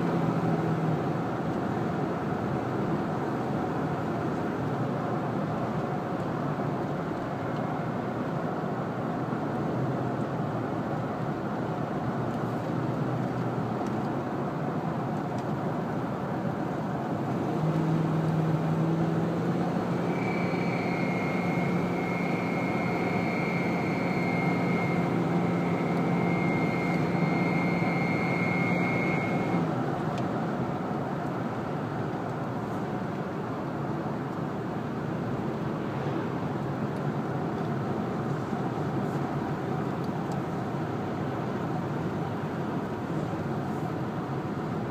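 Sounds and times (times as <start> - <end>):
car engine running: 17.0 - 31.1
high whine: 19.8 - 29.7
humming drone: 19.9 - 29.6.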